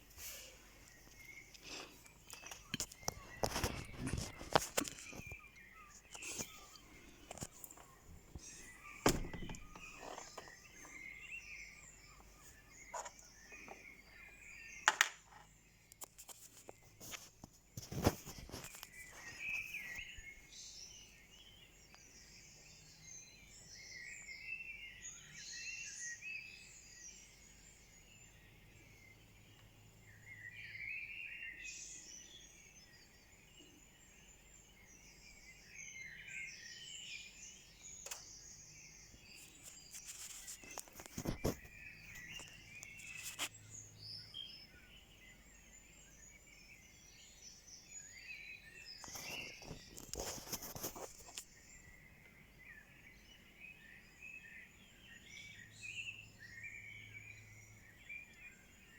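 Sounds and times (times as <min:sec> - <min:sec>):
many birds singing: 0:00.0 - 0:58.9
sharp clicks or knocks: 0:09.0 - 0:10.4.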